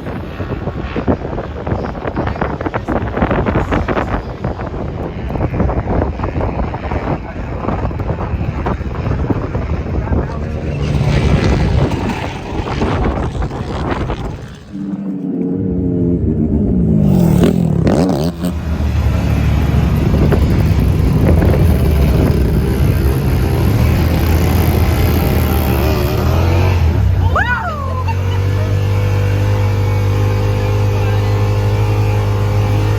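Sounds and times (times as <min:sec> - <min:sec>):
off-road vehicle engines revving: 0:00.0 - 0:32.9
vehicle passing by: 0:09.6 - 0:32.9.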